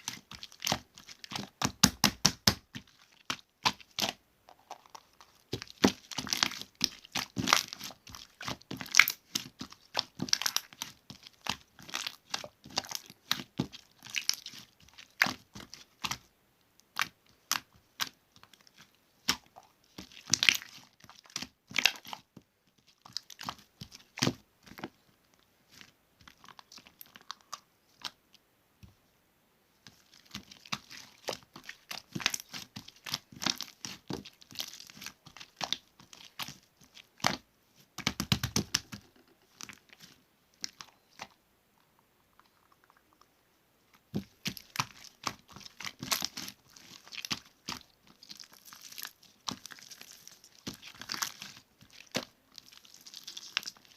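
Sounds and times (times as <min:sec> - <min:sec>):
slime popping and crackling: 0:00.0 - 0:16.3, 0:16.9 - 0:22.3, 0:29.9 - 0:37.4, 0:38.0 - 0:41.3, 0:44.1 - 0:53.9.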